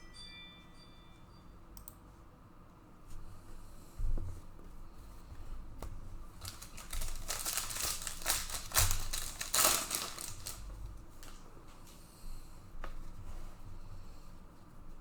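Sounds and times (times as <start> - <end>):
card wrapper crinkling: 6.4 - 11.4
cards clicking and rustling: 6.4 - 11.4.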